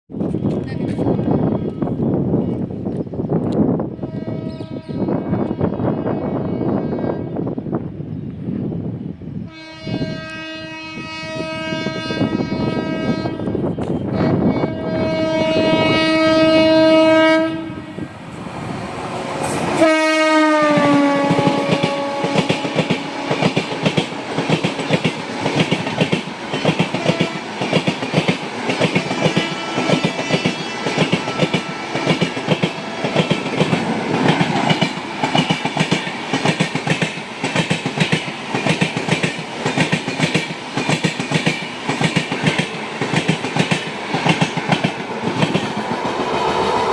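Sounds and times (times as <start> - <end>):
diesel locomotive passing: 0.2 - 46.9
train horn blasts: 4.0 - 7.4, 9.5 - 18.1, 19.8 - 23.7, 29.0 - 33.2
train wheels clickety-clack: 20.6 - 46.9.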